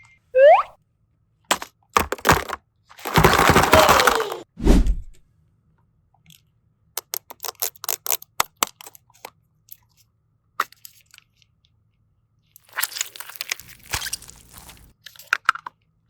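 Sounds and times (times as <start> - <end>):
sharp crunching crackles: 1.5 - 4.4, 12.7 - 14.9.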